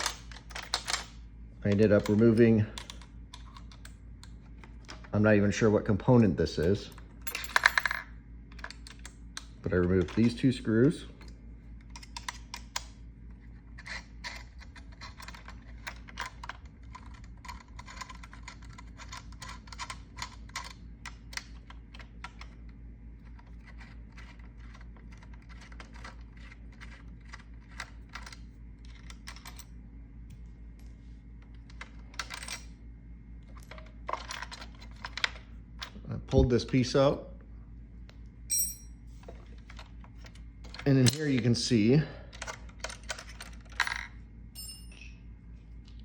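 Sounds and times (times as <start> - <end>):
steady low hum: 0.0 - 46.0.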